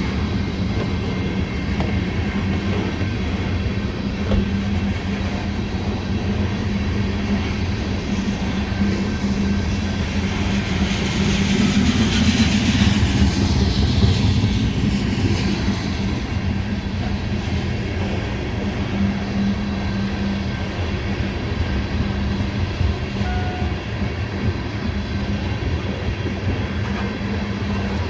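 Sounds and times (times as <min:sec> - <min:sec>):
train wheels rumbling on rail: 0:00.0 - 0:28.0.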